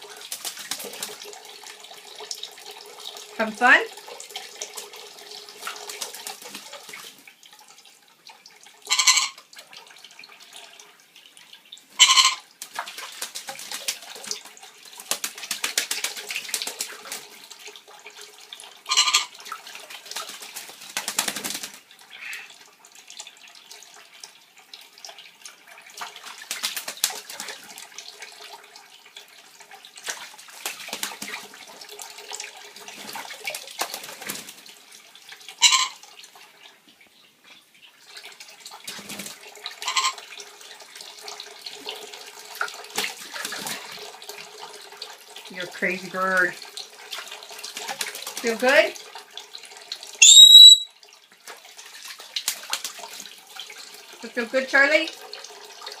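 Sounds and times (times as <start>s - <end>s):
tap water running: 0.0s - 56.0s
bird splashing in water: 0.2s - 1.4s, 5.6s - 7.2s, 12.0s - 17.4s, 18.9s - 22.5s, 26.0s - 27.8s, 30.0s - 31.6s, 32.8s - 34.8s, 38.8s - 40.2s, 42.9s - 44.1s, 47.6s - 49.0s, 51.6s - 53.2s
bird squawks: 8.9s - 9.4s, 12.0s - 12.4s, 18.9s - 19.3s, 22.2s - 22.6s, 35.6s - 36.0s, 39.8s - 40.2s, 50.2s - 50.9s.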